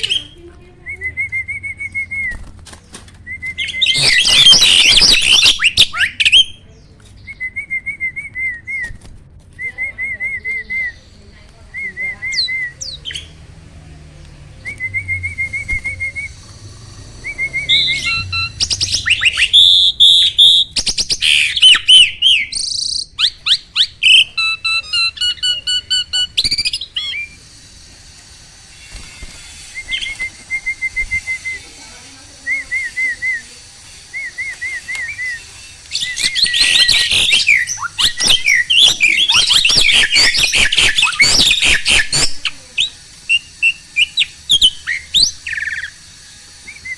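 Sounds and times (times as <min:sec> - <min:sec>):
loud bird chattering: 0:00.0 - 0:00.4, 0:03.5 - 0:06.9, 0:12.3 - 0:13.5, 0:16.1 - 0:27.7, 0:32.6 - 0:46.9
starling singing: 0:00.0 - 0:02.4, 0:03.0 - 0:07.6, 0:10.2 - 0:46.9.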